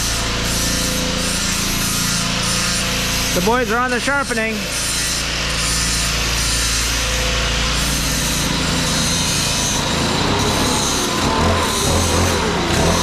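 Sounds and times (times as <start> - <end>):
grinder grinding steel: 0.0 - 13.0
low motor hum: 5.2 - 13.0.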